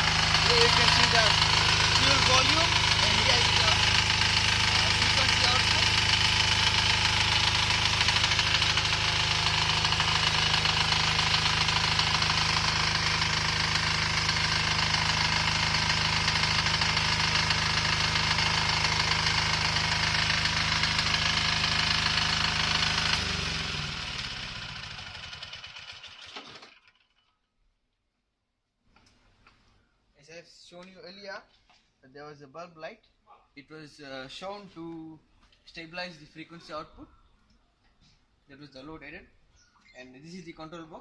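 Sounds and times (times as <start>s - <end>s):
diesel generator running: 0.0s - 26.7s.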